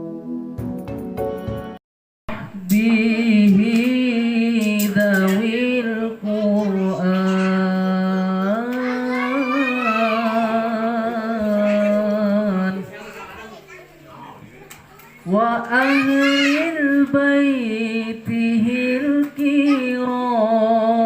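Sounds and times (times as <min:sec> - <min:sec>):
person singing devotional chant: 0:02.3 - 0:13.1, 0:15.2 - 0:21.0.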